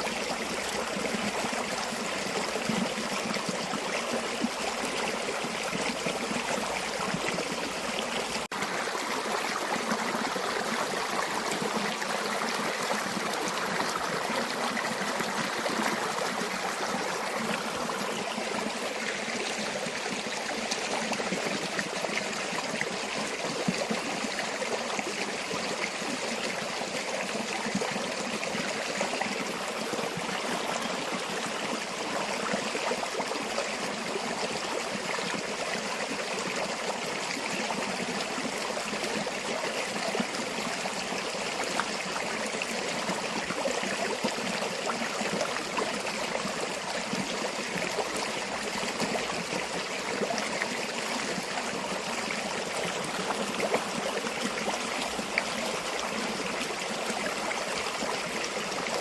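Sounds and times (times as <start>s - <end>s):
stream water flowing over rocks: 0.0s - 59.0s.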